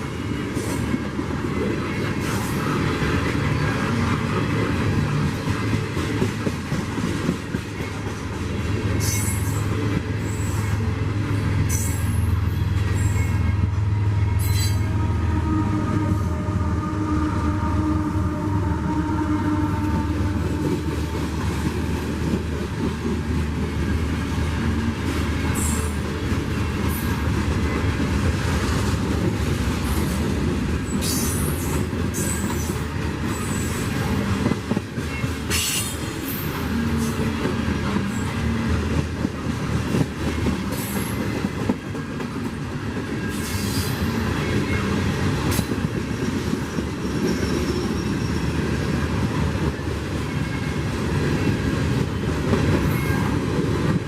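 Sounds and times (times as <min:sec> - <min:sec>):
train wheels rumbling and clacking: 0:00.0 - 0:15.2, 0:17.4 - 0:54.0
high-pitched wheel squeals: 0:14.4 - 0:15.0, 0:46.2 - 0:48.7.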